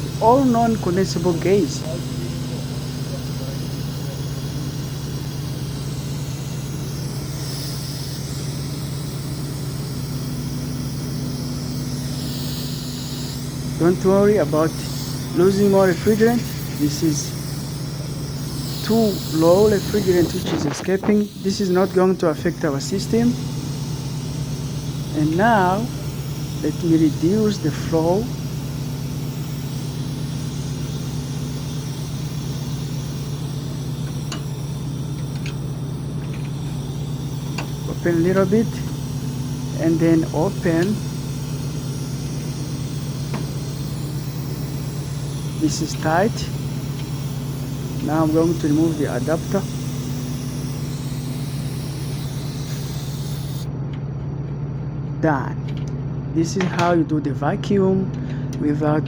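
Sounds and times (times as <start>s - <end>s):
gas hissing: 0.0s - 53.8s, 58.0s - 58.7s
low machinery hum: 0.0s - 59.0s.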